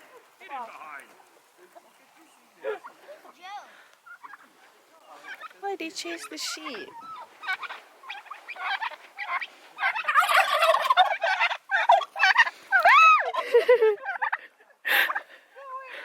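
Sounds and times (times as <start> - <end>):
turkeys gobbling: 0.0 - 15.3.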